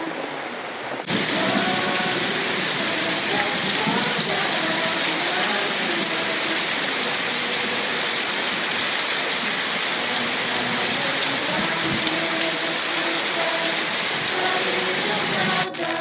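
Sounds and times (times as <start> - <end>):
heavy rain pouring: 0.0 - 16.0.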